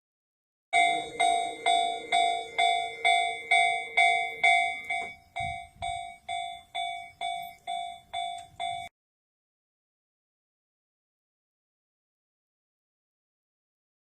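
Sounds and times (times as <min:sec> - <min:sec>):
low steady hum: 0:00.8 - 0:08.9
railroad crossing bell ringing: 0:00.8 - 0:08.9.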